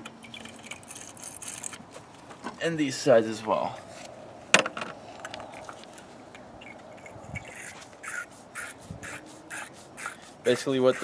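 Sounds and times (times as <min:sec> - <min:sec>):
wire brush scraping metal: 0:07.0 - 0:11.0.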